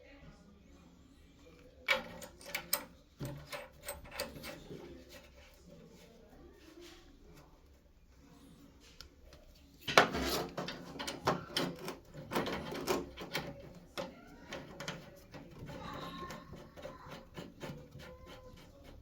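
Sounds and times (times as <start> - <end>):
irregular knocking and clattering: 1.8 - 5.4, 9.8 - 19.0.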